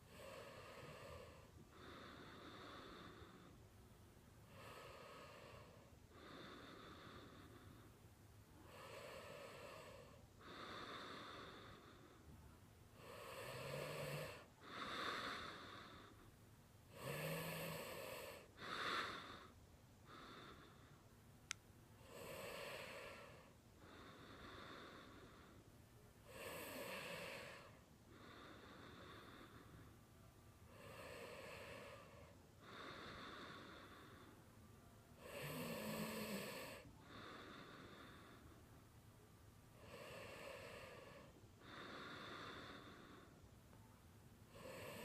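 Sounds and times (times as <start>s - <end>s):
snoring breaths: 0.0s - 3.6s, 4.4s - 8.0s, 8.6s - 12.4s, 13.0s - 21.0s, 22.0s - 25.6s, 26.2s - 30.0s, 30.7s - 34.4s, 35.2s - 38.6s, 39.7s - 43.4s, 44.5s - 45.0s.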